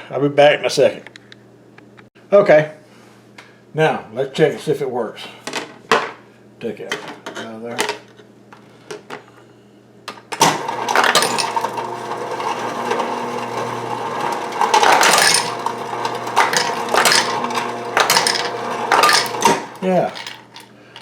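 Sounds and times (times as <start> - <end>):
ice clattering down chute: 10.4 - 20.6
ice dispenser motor humming: 10.4 - 20.7.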